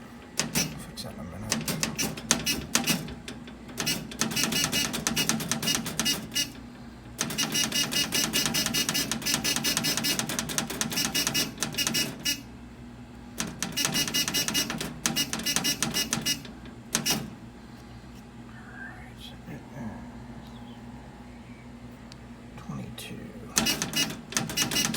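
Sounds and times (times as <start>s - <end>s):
fire alarm pulsing buzz: 3.8s - 6.6s, 7.2s - 10.3s, 10.9s - 12.5s, 13.7s - 17.3s, 23.6s - 24.9s.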